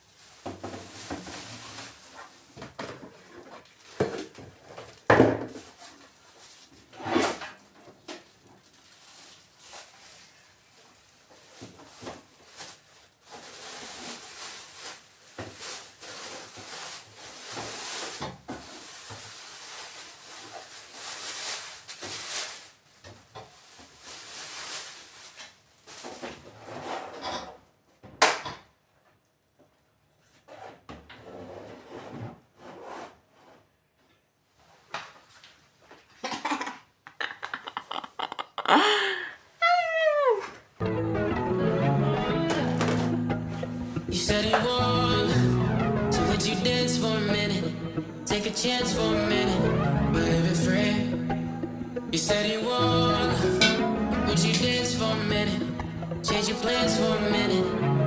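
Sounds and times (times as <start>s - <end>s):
dishes and utensils clattering: 53.6s - 55.0s.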